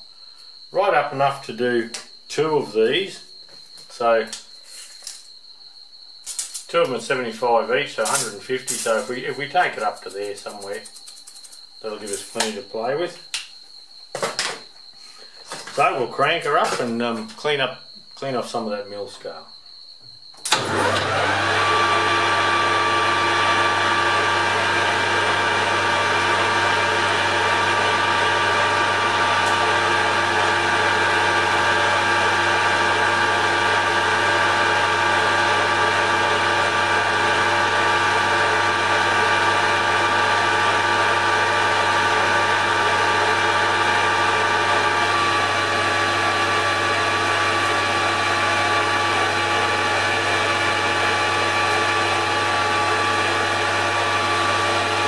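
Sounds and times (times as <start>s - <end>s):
metal lathe whining: 20.5s - 55.0s.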